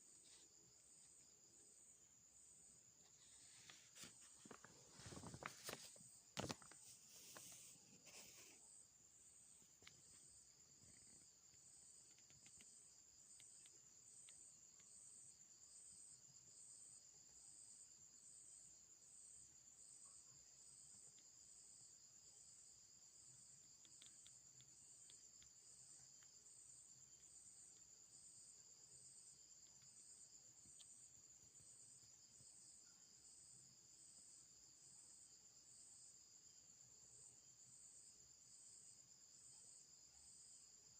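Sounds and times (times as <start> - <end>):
faint ticks: 9.7 - 15.0, 23.4 - 32.5.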